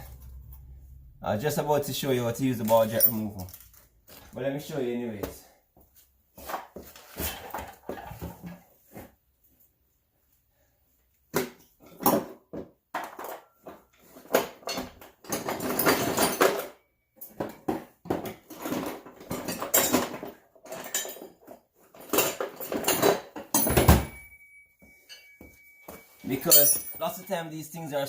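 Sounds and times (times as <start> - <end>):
metal hand tools clinking: 2.6 - 3.6, 22.2 - 27.5.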